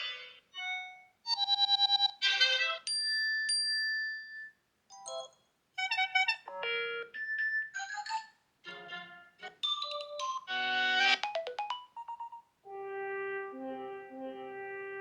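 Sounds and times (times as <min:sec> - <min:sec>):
electronic ringtone chimes: 0:11.0 - 0:12.5.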